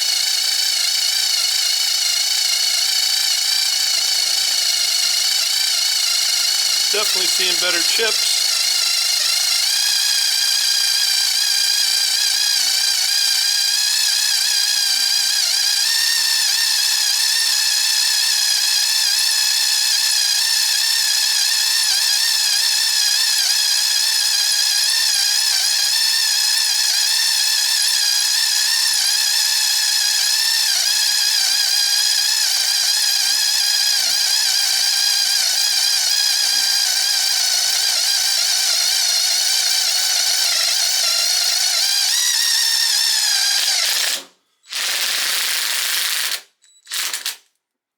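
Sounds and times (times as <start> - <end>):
electric drill cutting metal: 30.1 - 47.4.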